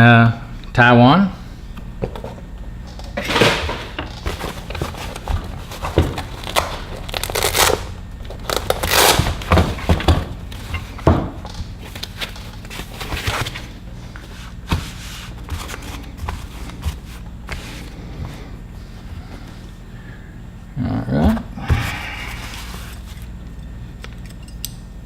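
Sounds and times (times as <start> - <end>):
packaging crinkling and tearing: 4.3 - 9.5.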